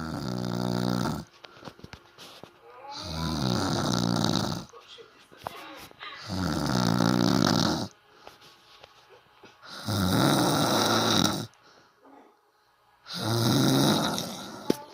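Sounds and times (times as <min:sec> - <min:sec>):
person snoring loudly: 0:00.0 - 0:01.3, 0:02.8 - 0:04.7, 0:06.2 - 0:07.9, 0:09.7 - 0:11.6, 0:13.1 - 0:14.9.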